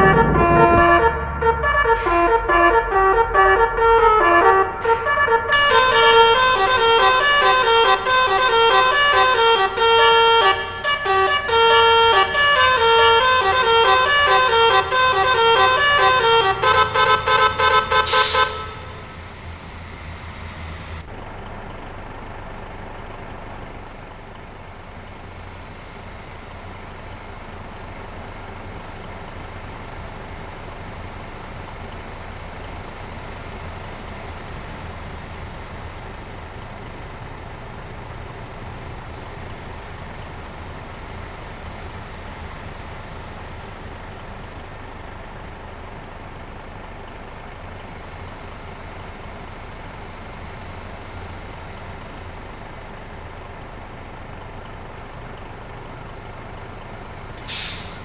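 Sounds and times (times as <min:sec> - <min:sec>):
multi-tone bus air horn melody: 0:00.0 - 0:21.0, 0:57.4 - 0:58.0
vehicle running rumble: 0:00.0 - 0:58.0.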